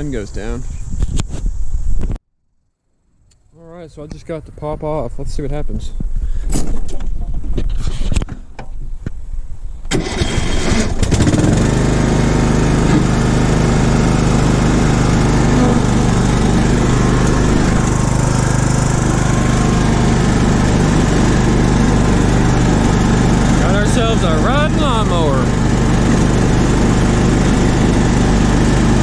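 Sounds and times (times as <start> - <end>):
riding mower engine starting: 9.9 - 29.0.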